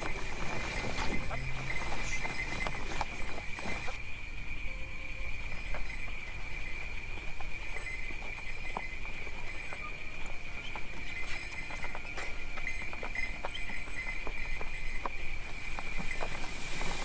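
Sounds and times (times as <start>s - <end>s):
sleigh bells jingling: 0.0s - 4.0s
horse hooves clip-clopping: 0.0s - 17.0s.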